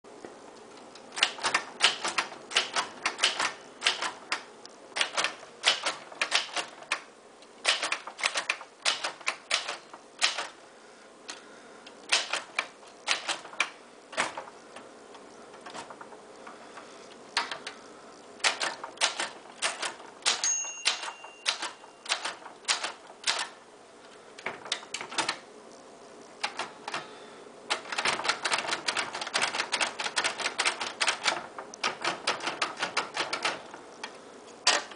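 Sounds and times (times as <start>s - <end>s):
typewriter keys striking: 1.2s - 7.0s, 7.6s - 10.6s, 12.1s - 14.5s, 18.4s - 23.6s, 24.4s - 25.4s, 26.4s - 27.0s, 27.7s - 33.8s, 34.6s - 34.9s
typewriter bell ringing: 20.2s - 22.4s.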